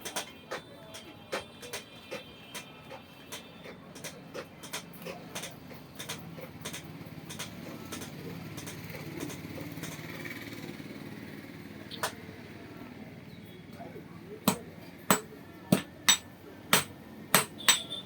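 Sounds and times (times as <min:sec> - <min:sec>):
hammer striking iron: 0:14.5 - 0:18.0.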